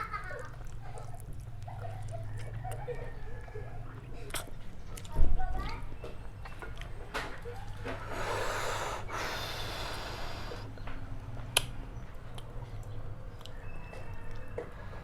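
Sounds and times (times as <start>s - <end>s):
man breathing out heavily: 8.0s - 10.7s.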